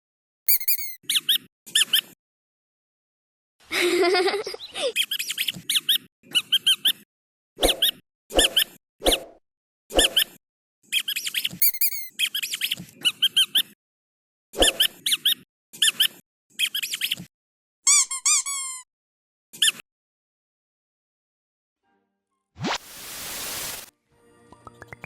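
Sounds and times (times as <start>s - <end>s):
squeaky dog toy squeaking: 0.5s - 2.1s, 11.1s - 13.6s, 17.9s - 18.9s.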